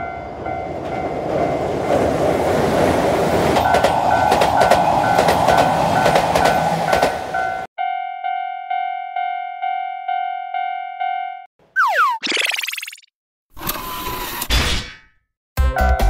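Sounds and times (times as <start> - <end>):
train rumbling past: 0.0 - 7.7.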